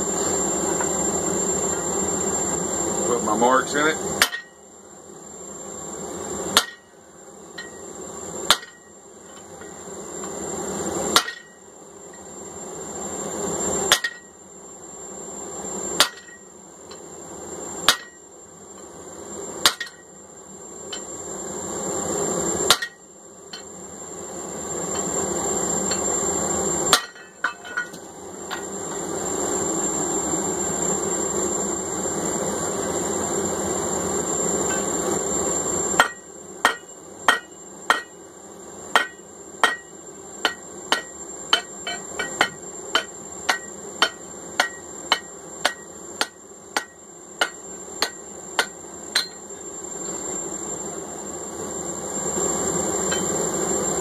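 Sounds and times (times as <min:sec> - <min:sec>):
hammer blows on steel anvil: 0:36.0 - 0:38.2.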